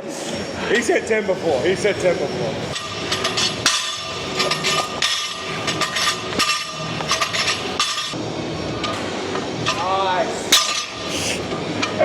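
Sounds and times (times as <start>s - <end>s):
gym background noise: 0.0s - 12.0s
metal gym equipment clanking: 2.6s - 8.2s.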